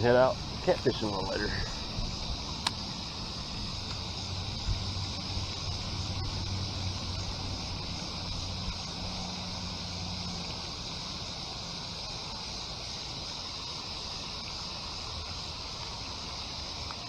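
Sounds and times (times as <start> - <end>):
wind on microphone: 0.4 - 9.2.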